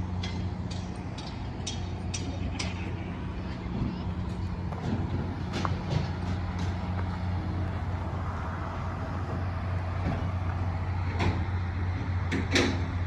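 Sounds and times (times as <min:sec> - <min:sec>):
engine humming: 0:00.0 - 0:13.0.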